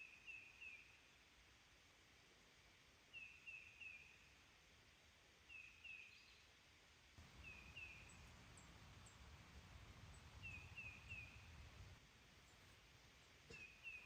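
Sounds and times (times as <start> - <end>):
bird calling faintly: 7.2 - 12.8.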